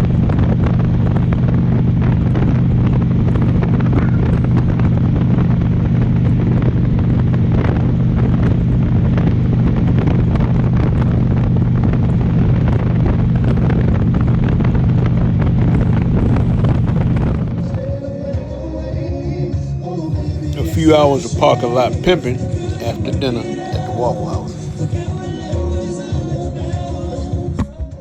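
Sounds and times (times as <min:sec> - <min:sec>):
wind buffeting microphone: 0:00.0 - 0:17.8
motorcycle engine cruising: 0:00.0 - 0:18.2.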